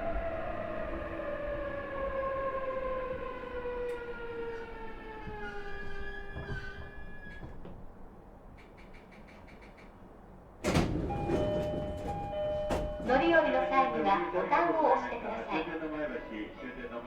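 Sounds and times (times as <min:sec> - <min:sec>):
train clicks: 0:03.8 - 0:14.4.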